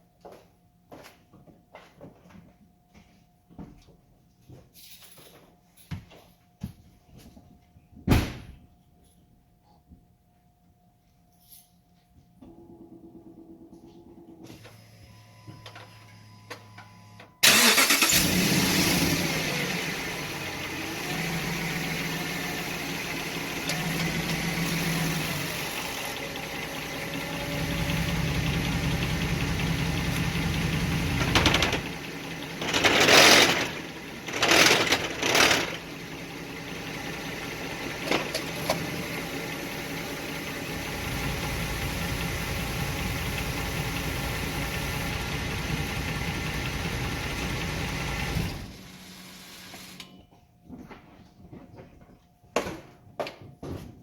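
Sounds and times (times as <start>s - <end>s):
truck engine starting and running: 17.4s - 50.2s.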